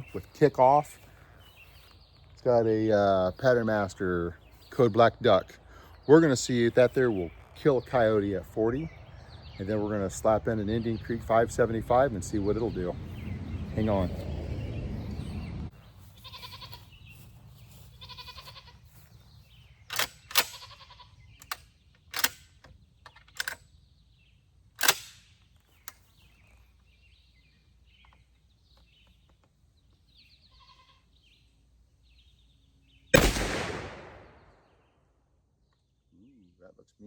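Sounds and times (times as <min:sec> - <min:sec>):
faint bleat-like calls: 0:16.0 - 0:16.9, 0:17.8 - 0:19.0, 0:20.5 - 0:21.2, 0:30.4 - 0:31.1
sharp clicks and knocks: 0:21.4 - 0:23.6
shotgun blast with echo: 0:33.2 - 0:34.6.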